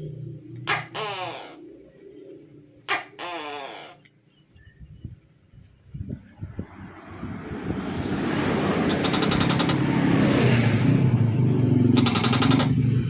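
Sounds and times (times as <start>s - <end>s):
motor vehicle engine approaching: 5.9s - 13.0s
short rapid rattling pulses: 6.6s - 13.0s.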